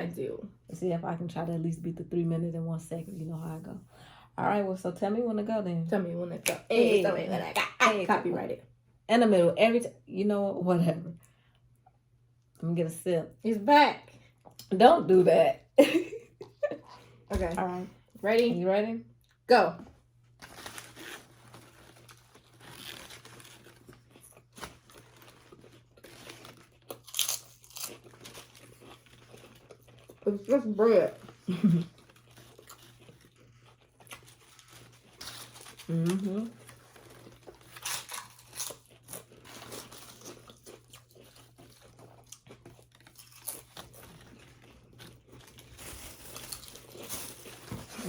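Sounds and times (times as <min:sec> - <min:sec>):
food wrappers crinkling: 0:20.3 - 0:48.0
people chewing and crunching: 0:20.4 - 0:48.0.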